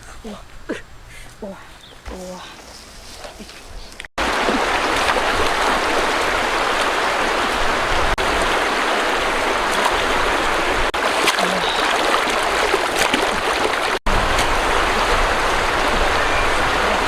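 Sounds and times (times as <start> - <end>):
stream water flowing: 4.2 - 17.0.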